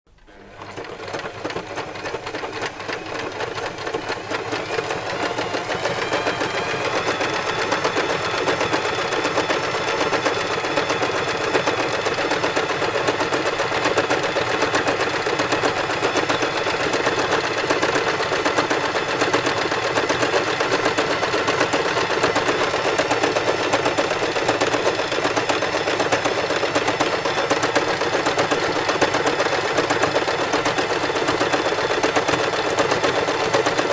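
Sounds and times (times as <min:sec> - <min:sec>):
sewing machine stitching: 0:00.1 - 0:33.9.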